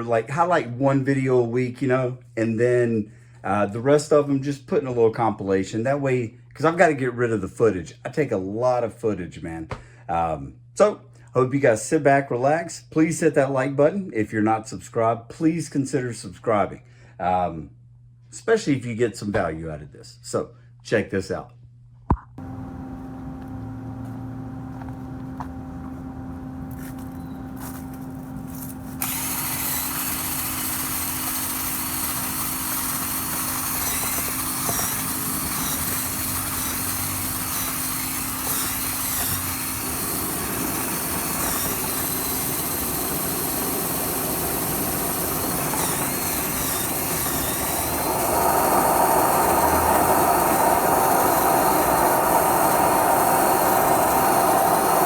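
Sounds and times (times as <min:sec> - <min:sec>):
power tool running: 0:22.4 - 0:55.0.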